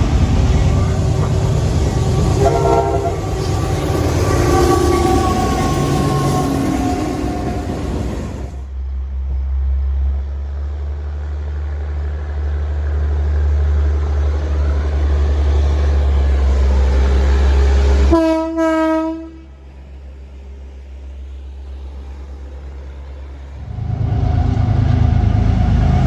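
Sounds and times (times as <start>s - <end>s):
train rumbling: 0.0s - 26.0s
locomotive air horn blasts: 2.3s - 3.4s, 18.1s - 19.6s.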